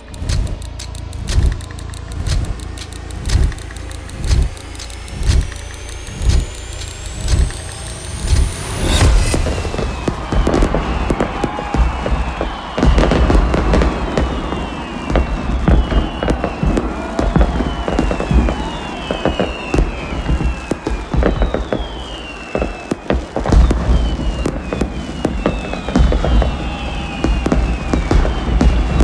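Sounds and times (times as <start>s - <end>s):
falling whistles: 0.0s - 23.0s
fireworks bangs and crackles: 0.0s - 29.0s.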